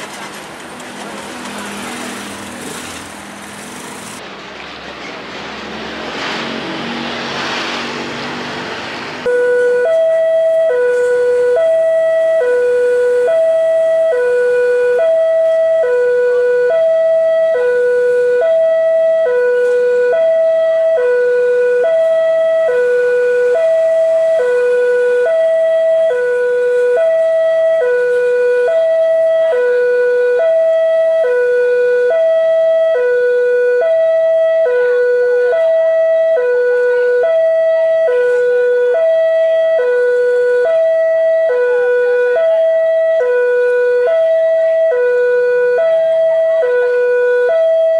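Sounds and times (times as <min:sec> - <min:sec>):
level crossing alarm two-tone: 0:09.3 - 0:31.4, 0:32.1 - 0:47.9.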